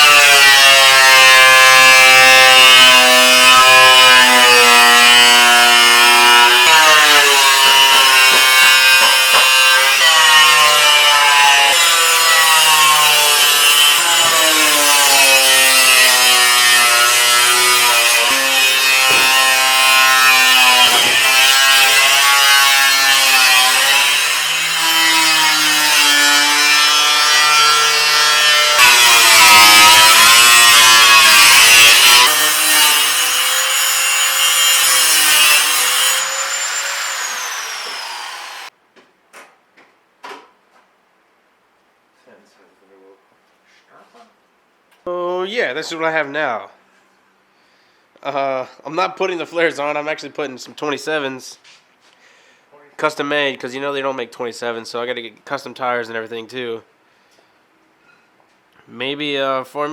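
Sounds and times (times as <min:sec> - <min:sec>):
power tool cutting sheet metal: 0:00.0 - 0:38.7.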